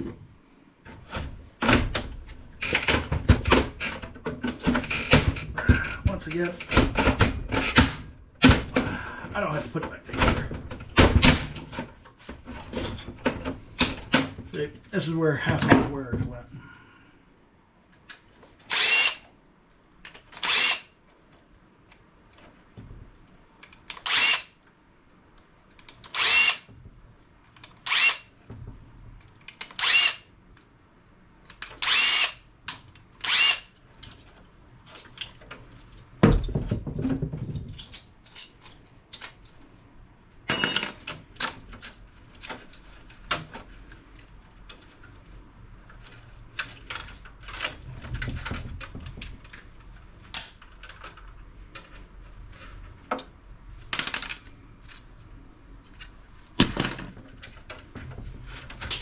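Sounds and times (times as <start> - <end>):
electric drill spinning: 18.7 - 19.2, 20.4 - 20.9, 24.0 - 24.5, 26.1 - 26.7, 27.8 - 28.3, 29.8 - 30.3, 31.8 - 32.4, 33.2 - 33.7.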